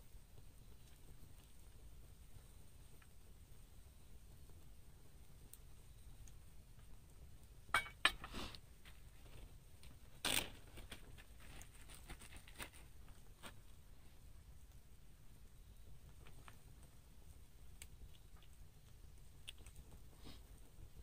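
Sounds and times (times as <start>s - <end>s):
scraping rustle: 10.2s - 13.6s.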